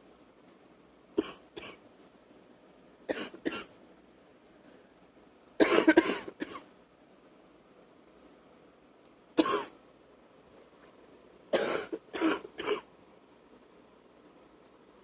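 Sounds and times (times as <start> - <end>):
woman coughing wetly: 1.2 - 1.8, 3.1 - 3.7, 5.6 - 6.6, 9.4 - 9.8, 11.5 - 12.9.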